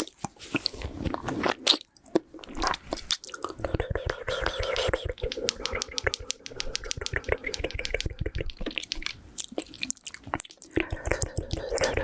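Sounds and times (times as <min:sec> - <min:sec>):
wet mouth clicks and smacks: 0:02.4 - 0:12.0
breath hiss: 0:03.6 - 0:07.0.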